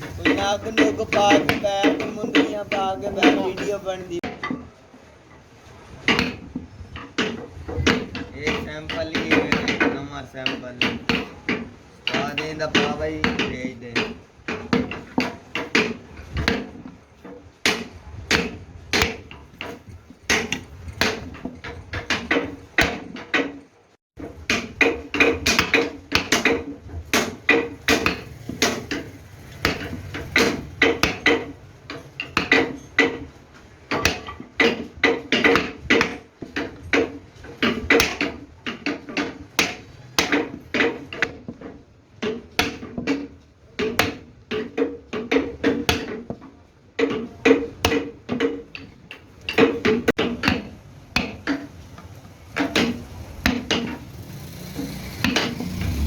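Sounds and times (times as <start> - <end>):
hand tool hammering: 0.0 - 4.8, 6.0 - 23.6, 24.2 - 56.0.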